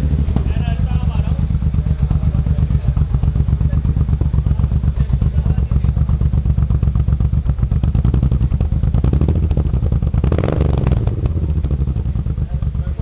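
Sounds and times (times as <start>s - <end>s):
motorcycle engine idling: 0.0s - 13.0s.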